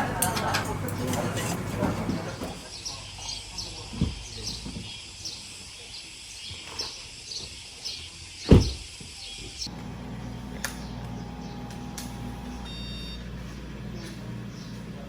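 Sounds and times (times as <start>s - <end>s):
bird chirping: 2.6s - 9.7s
loud low thump: 8.5s - 8.8s.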